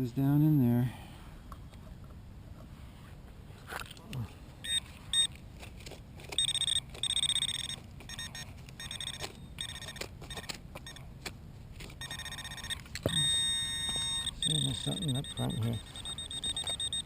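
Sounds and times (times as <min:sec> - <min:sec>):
metal detector beeping: 0:04.6 - 0:05.4, 0:06.3 - 0:11.0, 0:12.0 - 0:17.0.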